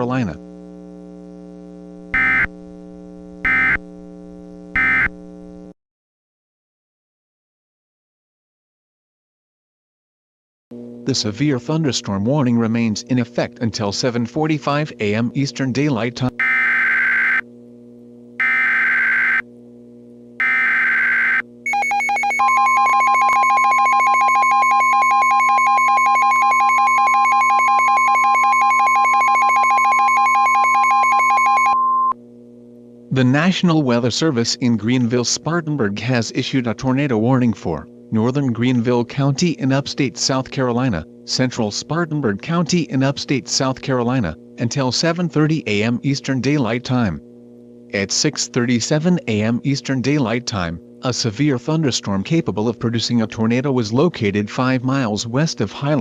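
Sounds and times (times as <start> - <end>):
electrical hum: 0.0 - 5.8, 10.8 - 56.0
digital data tone bursts: 2.1 - 2.5, 3.4 - 3.8, 4.8 - 5.1, 16.4 - 17.4, 18.4 - 19.4, 20.4 - 32.1.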